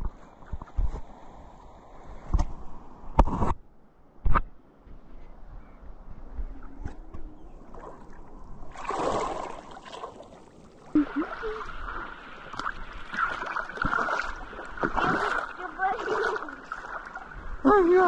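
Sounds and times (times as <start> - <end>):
water splashing: 6.7 - 18.0.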